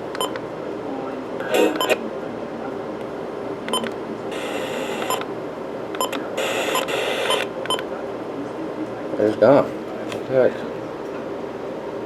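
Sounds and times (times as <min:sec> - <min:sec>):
radio hiss: 0:01.4 - 0:02.0, 0:04.3 - 0:05.2, 0:06.3 - 0:07.4.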